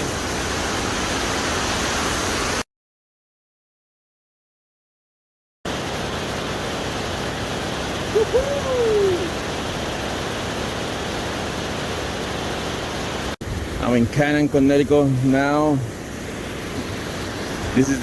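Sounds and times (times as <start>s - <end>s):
waterfall rushing: 7.4s - 10.5s, 11.8s - 18.0s
hoot-like call: 8.1s - 9.4s.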